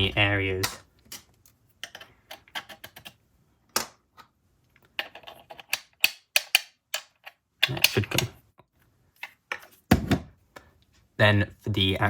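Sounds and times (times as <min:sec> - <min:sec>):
plastic parts clicking and knocking: 0:00.6 - 0:08.4.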